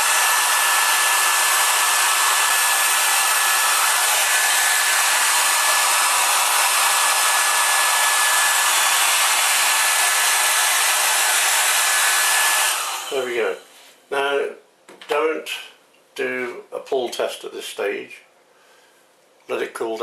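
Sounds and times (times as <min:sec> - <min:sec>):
hairdryer blowing: 0:00.0 - 0:13.7.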